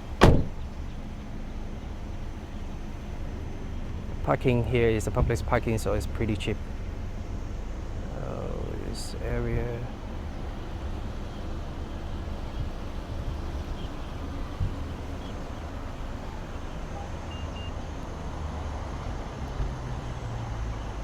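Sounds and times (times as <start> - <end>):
outdoor background noise: 0.0 - 21.0.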